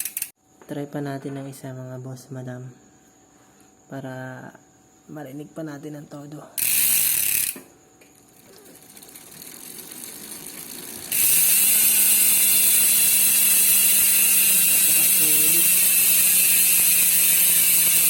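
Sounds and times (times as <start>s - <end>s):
bicycle hub ratcheting buzz: 0.0s - 0.3s, 6.6s - 18.0s.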